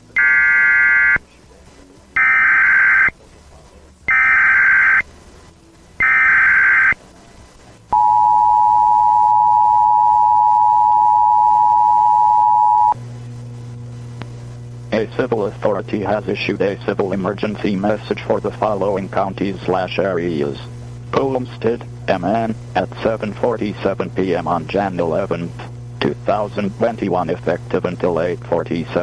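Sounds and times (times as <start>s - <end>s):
data tone bursts: 0.2s - 1.2s, 2.2s - 3.1s, 4.1s - 5.0s, 6.0s - 7.0s, 8.0s - 13.0s
low hum: 4.0s - 27.7s
two-tone attention signal: 4.1s - 5.0s, 6.0s - 7.0s, 8.0s - 13.0s.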